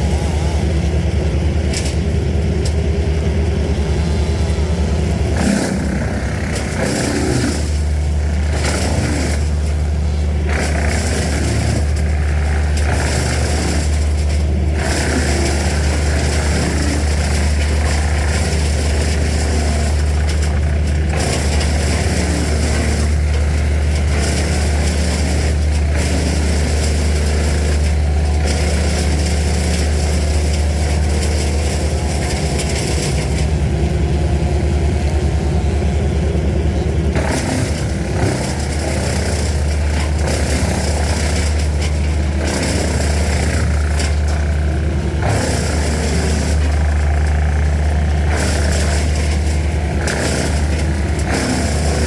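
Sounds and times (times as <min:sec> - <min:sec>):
engine running with low hum: 0:00.0 - 0:52.0.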